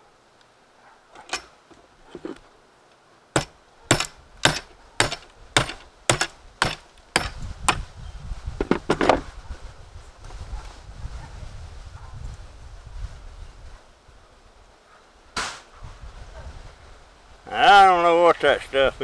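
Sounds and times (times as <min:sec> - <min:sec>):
hammer striking electronic part: 0:03.4 - 0:07.3.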